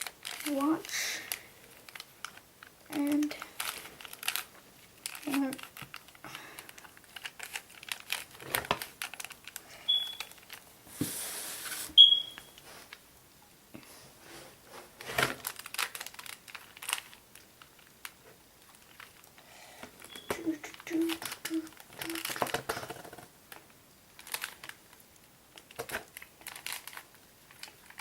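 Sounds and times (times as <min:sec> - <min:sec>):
hiss: 0:10.9 - 0:12.0
plastic cube twisting clicks: 0:25.6 - 0:28.0.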